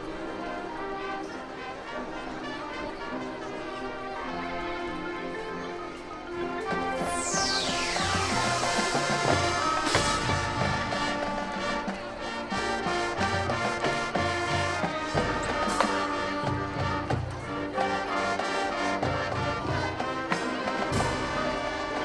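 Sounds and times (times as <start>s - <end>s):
marching band playing: 0.0s - 22.0s.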